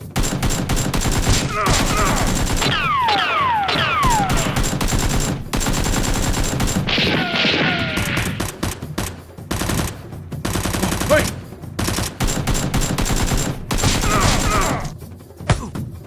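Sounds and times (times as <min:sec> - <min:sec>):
gunfire volleys: 0:00.0 - 0:15.0
falling whistles: 0:02.7 - 0:04.6.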